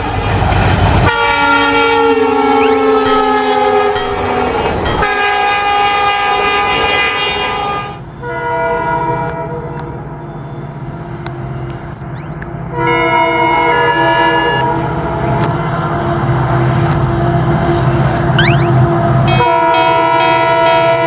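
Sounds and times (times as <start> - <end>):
train horn chords: 1.0 - 10.1, 12.7 - 17.9, 18.8 - 21.0.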